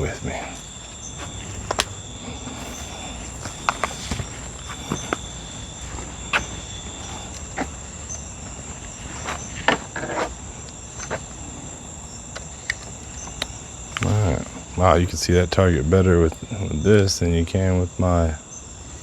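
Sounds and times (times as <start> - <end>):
footsteps walking over ground: 0.0 - 14.7
insects trilling: 0.0 - 19.0.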